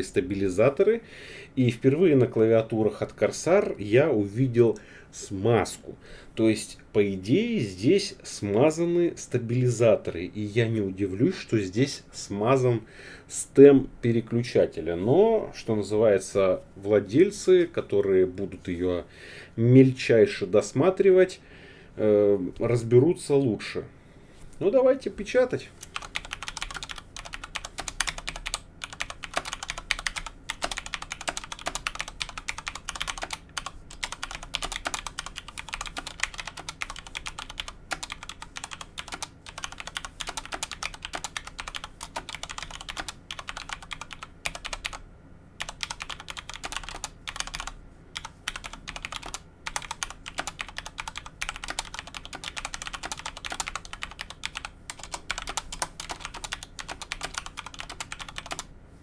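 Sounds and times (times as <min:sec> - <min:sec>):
mechanical keyboard typing: 0:25.8 - 0:45.0, 0:45.6 - 0:58.7.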